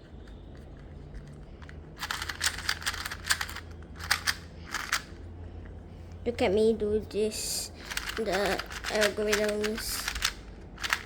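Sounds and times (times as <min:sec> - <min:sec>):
speed cube clacking: 0:00.0 - 0:05.2, 0:07.8 - 0:11.0
low steady hum: 0:00.0 - 0:11.0.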